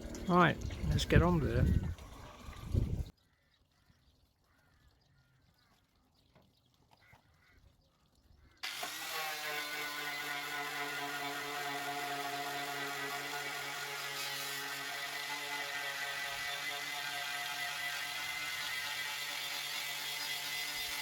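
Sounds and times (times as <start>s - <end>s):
power tool whining: 8.6s - 21.0s.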